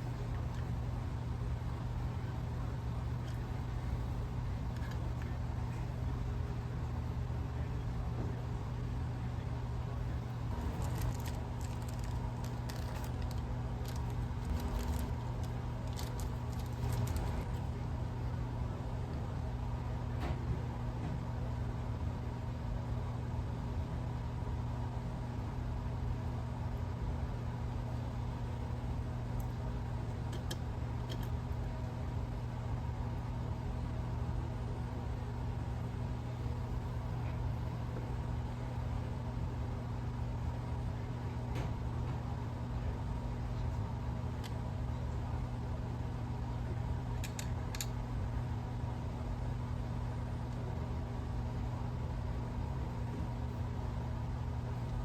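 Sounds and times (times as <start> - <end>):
machine hum: 0.0 - 21.9
steady low machine hum: 0.0 - 55.0
light clicks: 47.2 - 48.0.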